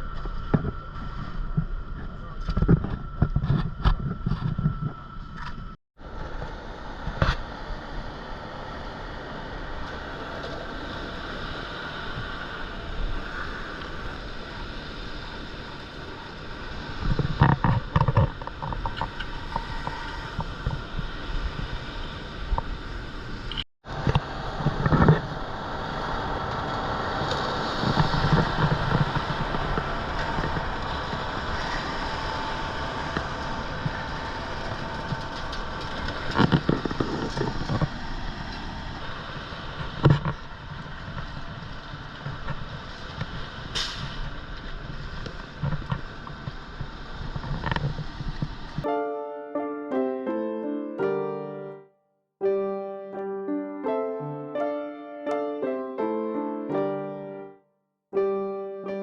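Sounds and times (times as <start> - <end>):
concrete mixer truck running: 23.9 - 40.0.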